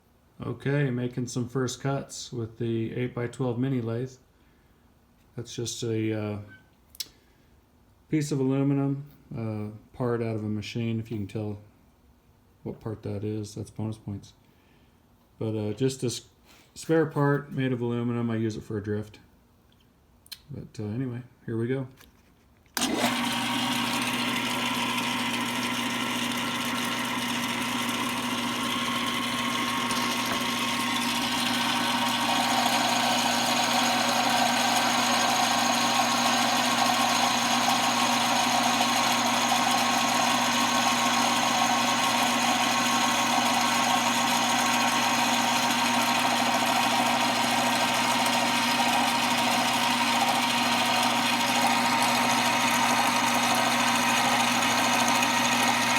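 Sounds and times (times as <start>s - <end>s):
lathe humming and whining: 22.8s - 55.9s.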